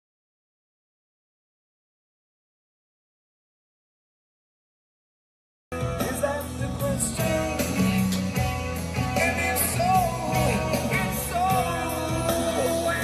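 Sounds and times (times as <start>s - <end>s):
rock music with singing: 5.7s - 13.0s.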